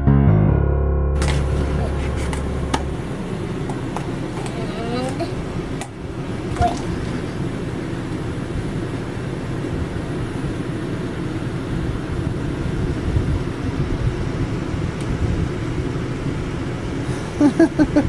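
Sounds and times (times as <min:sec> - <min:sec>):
steady low rumbling: 0:00.0 - 0:08.8.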